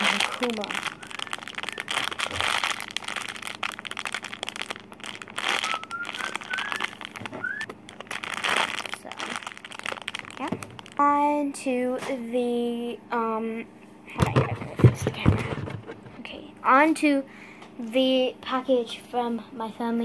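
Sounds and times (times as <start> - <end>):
plastic packaging crinkling: 0.0 - 11.2.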